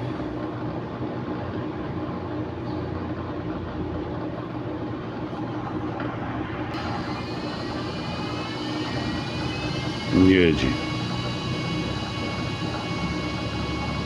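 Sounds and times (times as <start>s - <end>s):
washing machine drain pump humming: 4.4s - 14.0s
faint rising whine: 5.4s - 14.0s.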